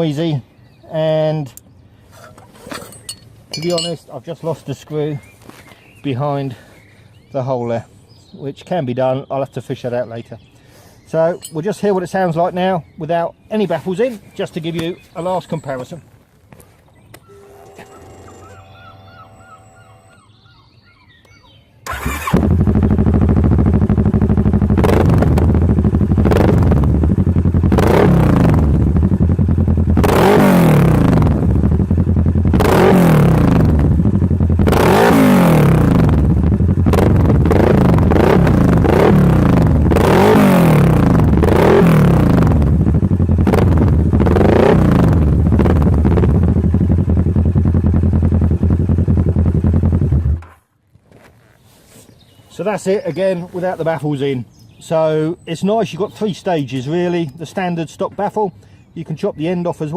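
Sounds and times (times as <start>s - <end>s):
motorcycle engine revving: 21.9s - 50.6s.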